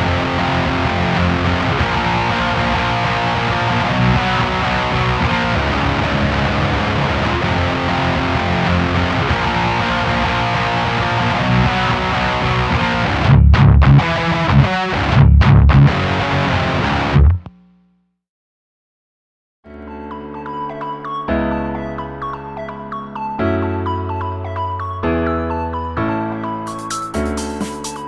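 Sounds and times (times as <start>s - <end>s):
clean electric guitar strumming: 0.0s - 17.8s.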